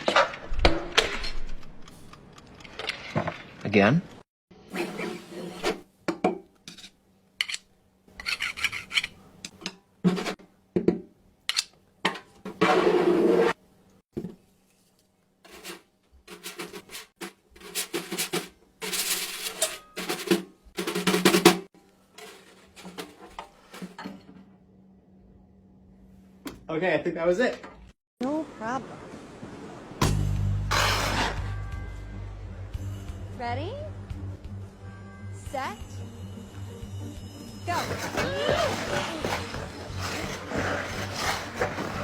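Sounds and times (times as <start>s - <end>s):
props rubbing and scraping: 15.4s - 21.1s, 22.2s - 24.1s, 30.7s - 31.6s, 37.7s - 42.0s.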